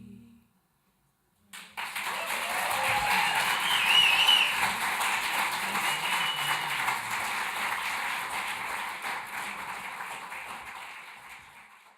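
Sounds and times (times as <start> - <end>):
audience applauding: 1.6 - 11.9
short whistle: 3.5 - 4.6, 5.9 - 6.6.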